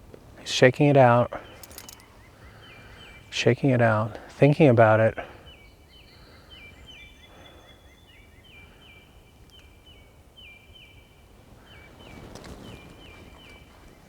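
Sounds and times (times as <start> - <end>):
faint outdoor background noise: 0.0 - 14.0
bird chirping: 1.0 - 4.7, 5.4 - 13.8
soft rustle: 11.9 - 14.0.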